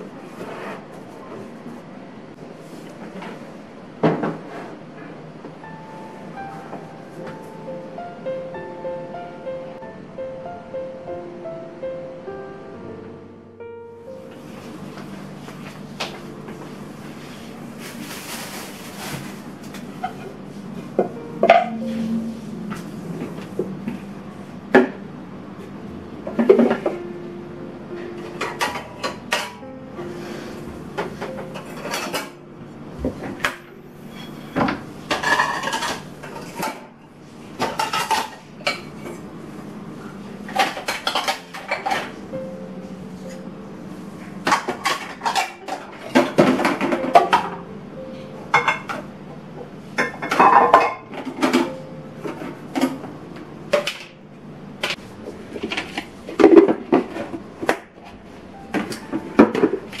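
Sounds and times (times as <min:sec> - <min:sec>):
dishes and cutlery clinking: 0:28.4 - 0:29.6, 0:31.0 - 0:32.4, 0:33.2 - 0:36.9, 0:37.6 - 0:39.2, 0:40.5 - 0:42.1, 0:44.4 - 0:47.5, 0:50.0 - 0:53.0.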